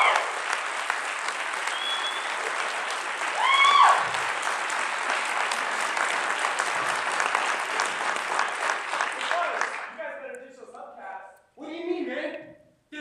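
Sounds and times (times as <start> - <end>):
crowd whooping: 0.0 - 0.5, 1.6 - 4.3
audience clapping: 0.0 - 10.9.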